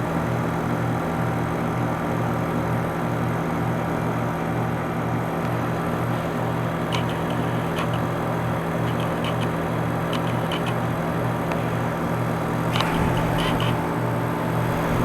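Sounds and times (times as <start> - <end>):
heat pump compressor hum: 0.0 - 15.0
light ticks: 8.8 - 11.6.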